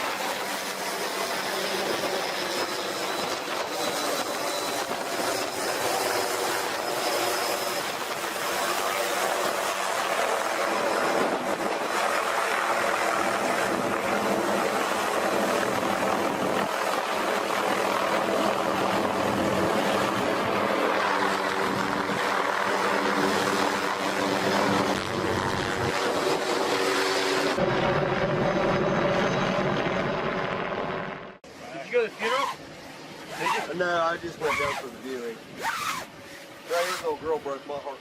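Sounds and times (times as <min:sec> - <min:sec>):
helicopter engine and rotor: 0:00.0 - 0:38.0.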